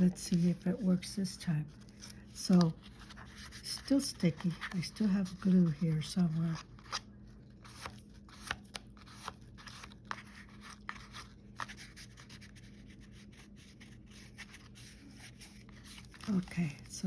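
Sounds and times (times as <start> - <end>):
steady low hum: 0.0 - 17.0
paper clicks and rustles: 13.8 - 17.0.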